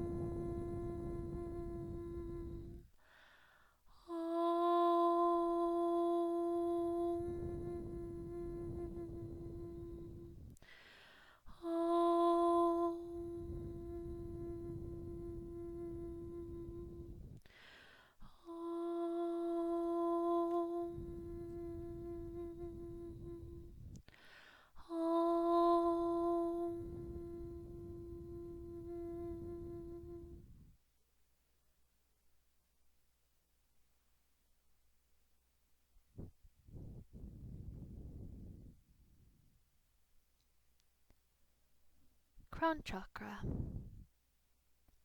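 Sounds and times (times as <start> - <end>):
woman chanting om: 0.0 - 3.2, 3.9 - 30.7, 42.5 - 43.8
woman breathing in: 2.5 - 4.0, 10.1 - 11.6, 17.1 - 18.4, 23.9 - 24.8.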